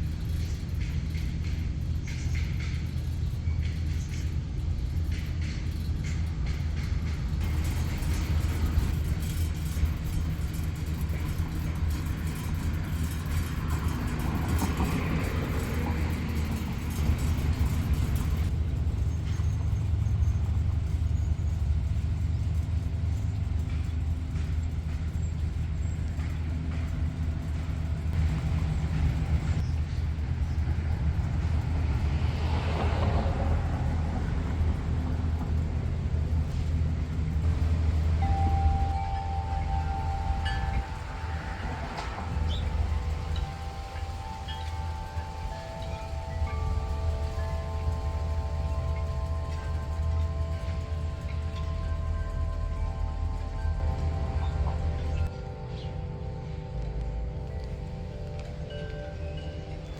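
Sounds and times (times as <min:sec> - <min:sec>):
low mechanical hum: 0:00.0 - 0:59.9
rushing noise: 0:27.7 - 0:59.9.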